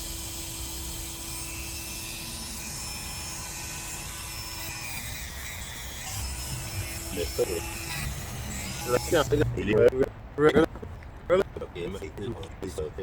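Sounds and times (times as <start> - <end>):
rotary tool sanding dog toenail: 0.0 - 9.7.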